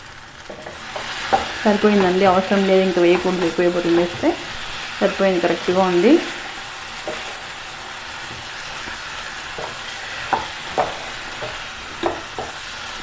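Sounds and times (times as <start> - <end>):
chicken sizzling in a pan: 0.0 - 13.0
spatula scraping a pan: 0.4 - 5.6
spatula knocking on pan: 0.5 - 4.4, 7.0 - 7.4, 9.4 - 12.6.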